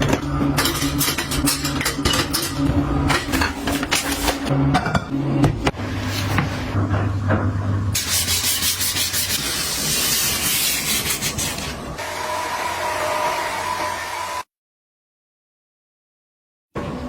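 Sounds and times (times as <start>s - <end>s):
scrubbing or wiping: 8.0s - 11.8s.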